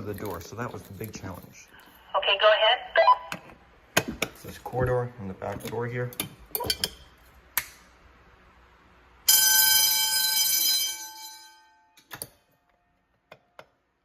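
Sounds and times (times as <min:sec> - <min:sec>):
fire alarm bell ringing: 0:09.2 - 0:12.0.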